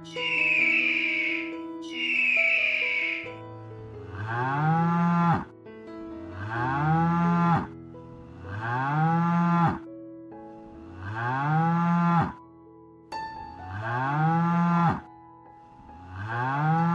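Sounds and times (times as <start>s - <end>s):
cow mooing: 0.1s - 3.3s, 4.0s - 5.5s, 6.3s - 7.7s, 8.3s - 9.8s, 10.8s - 12.4s, 13.7s - 15.0s, 16.0s - 16.9s.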